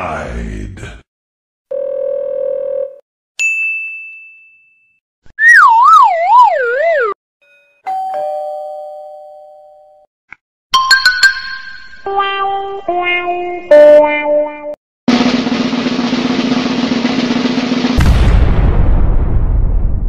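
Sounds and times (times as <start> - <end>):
high bell ding: 3.4 - 5.0
wavering siren-like warble: 5.4 - 7.2.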